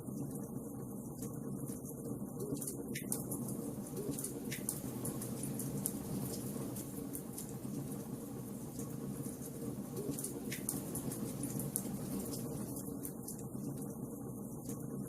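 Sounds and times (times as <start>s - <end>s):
wood fire crackling: 3.2s - 14.0s.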